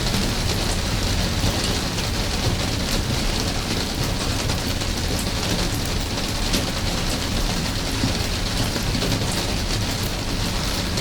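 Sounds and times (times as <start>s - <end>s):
steady rain falling: 0.0s - 11.0s.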